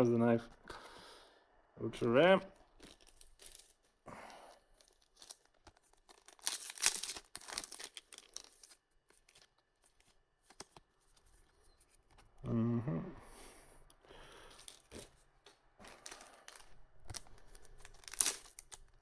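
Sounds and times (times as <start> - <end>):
foil pack tearing and crinkling: 2.7 - 3.8, 4.7 - 9.5, 15.9 - 19.0.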